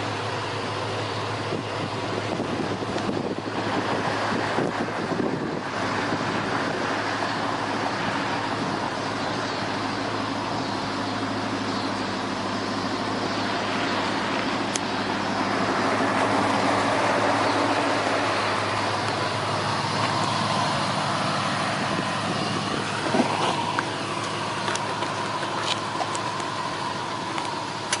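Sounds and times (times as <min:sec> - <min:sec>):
car running: 0:00.0 - 0:28.0
sharp clicks: 0:27.3 - 0:28.0.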